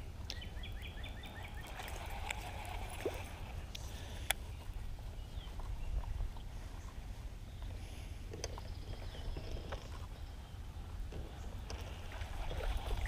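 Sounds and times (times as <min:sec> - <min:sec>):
steady low rumble: 0:02.9 - 0:13.0.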